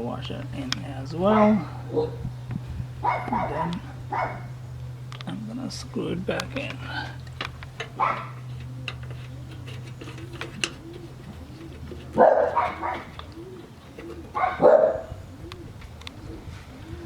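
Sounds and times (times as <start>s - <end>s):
low hum: 0.0s - 17.0s
dog barking: 1.3s - 2.2s, 3.0s - 4.5s, 8.0s - 8.4s, 12.2s - 13.1s, 14.4s - 15.1s.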